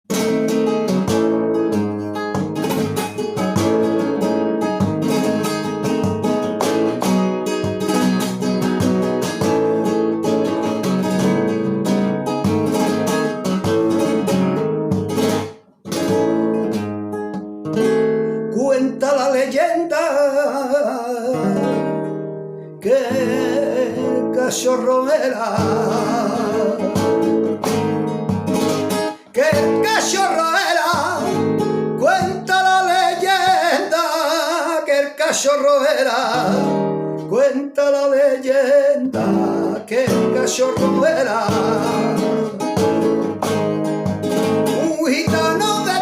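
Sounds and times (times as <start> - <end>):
flamenco acoustic guitar: 0.1 - 46.0
person singing: 18.3 - 22.1, 22.8 - 27.6, 28.9 - 43.5, 44.6 - 46.0.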